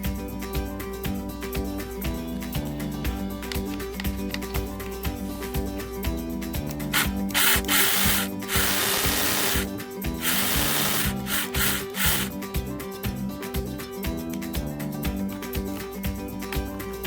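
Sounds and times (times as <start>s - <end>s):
guitar music: 0.0s - 17.0s
electric chainsaw cutting wood: 7.0s - 12.4s.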